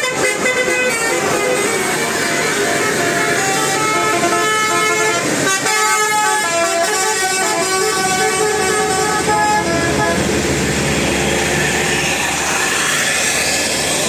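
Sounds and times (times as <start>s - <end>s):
musical air horn melody: 0.0s - 10.4s.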